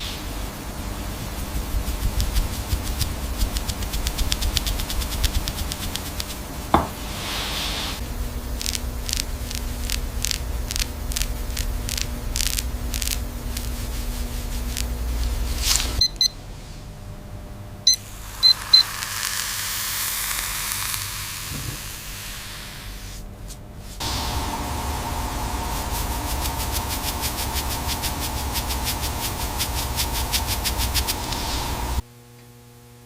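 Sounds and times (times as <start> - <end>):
rhythmic short work strokes: 0.0 - 6.7, 7.9 - 16.0, 24.0 - 32.0
steady spray hiss: 0.0 - 16.0, 18.0 - 23.3, 24.0 - 32.0
low hum: 8.0 - 18.9, 23.3 - 32.8
short high electronic beeps: 16.0 - 16.4, 17.9 - 18.9.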